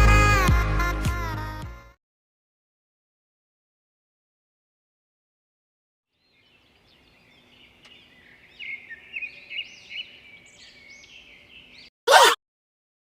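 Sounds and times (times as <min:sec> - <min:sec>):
birds chirping: 0:06.1 - 0:12.3.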